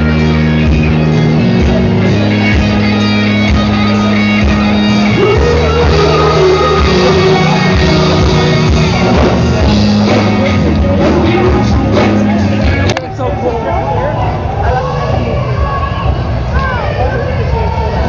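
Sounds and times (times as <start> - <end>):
rock music with guitar: 0.0 - 18.0
person singing: 2.7 - 12.9.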